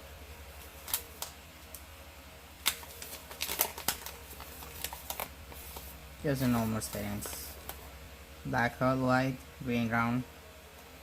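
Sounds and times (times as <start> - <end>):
packaging crinkling: 0.6 - 1.4, 2.6 - 7.9.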